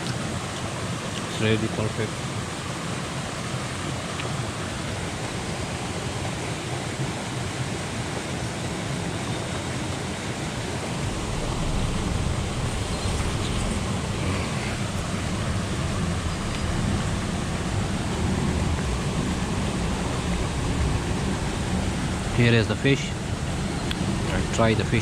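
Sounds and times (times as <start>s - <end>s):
heavy rain hissing: 0.0s - 25.0s
low rumble: 10.6s - 25.0s.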